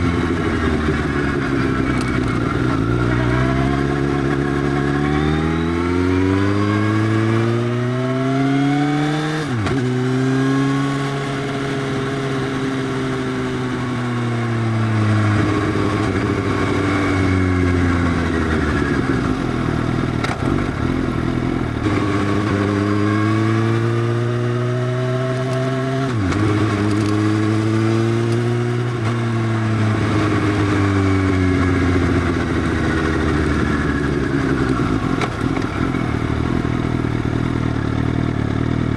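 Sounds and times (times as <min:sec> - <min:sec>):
motorcycle gear change: 0:00.0 - 0:05.0, 0:20.1 - 0:36.8
motorcycle accelerating: 0:00.0 - 0:38.9.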